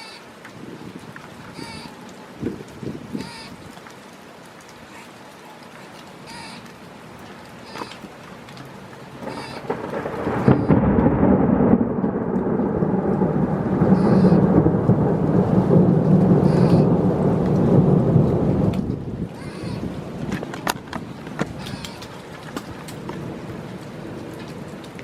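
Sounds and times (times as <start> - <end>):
steady rain: 0.0 - 25.0
thunder rumbling: 9.2 - 25.0.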